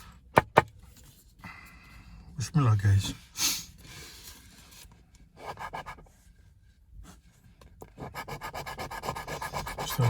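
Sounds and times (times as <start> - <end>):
coin scraping a scratch card: 8.1 - 10.0.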